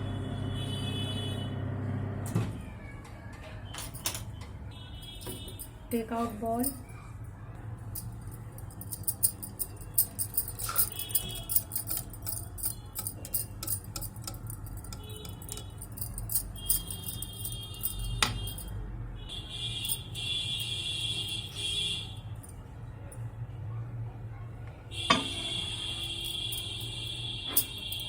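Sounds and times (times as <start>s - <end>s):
spoon clinking against bowl: 9.2s - 18.6s.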